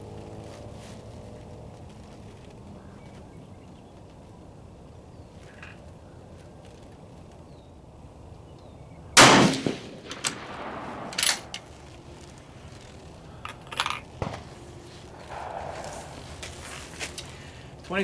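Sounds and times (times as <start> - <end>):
rifle shot with echo: 9.2 - 12.4, 14.2 - 17.8.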